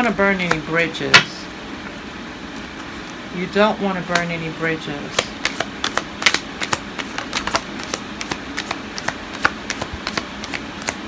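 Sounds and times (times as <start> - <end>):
cards being shuffled: 0.0 - 0.8, 2.5 - 3.2, 5.0 - 11.0.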